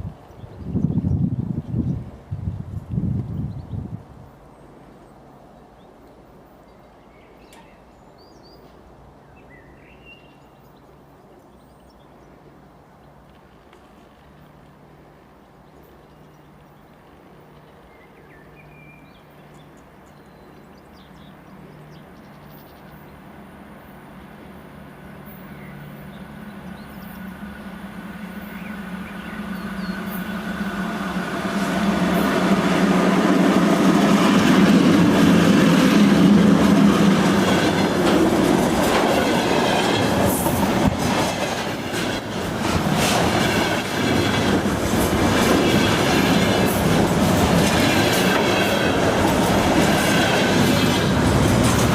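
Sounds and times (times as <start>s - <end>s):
locomotive hum: 21.4s - 51.9s
wagon wheels clacking over rail joints: 34.5s - 51.9s.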